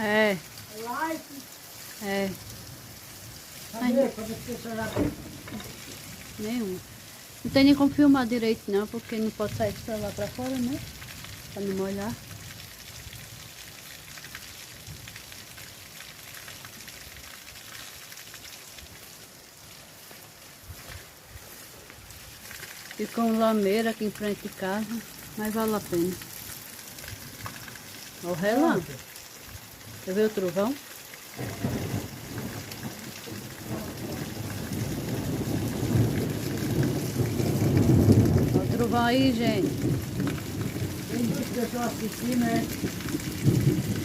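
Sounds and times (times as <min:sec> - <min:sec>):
rain falling: 0:00.0 - 0:44.0
thunder rumbling: 0:04.1 - 0:11.1, 0:31.4 - 0:44.0.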